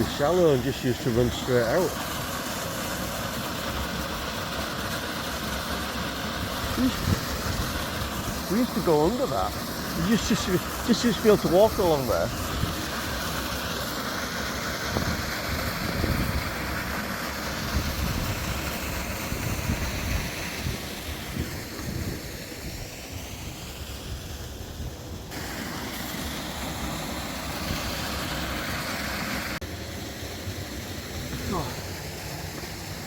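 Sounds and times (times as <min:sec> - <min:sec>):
water rushing from waterfall: 0:00.0 - 0:33.0
wind buffeting microphone: 0:14.9 - 0:16.6, 0:17.6 - 0:22.9.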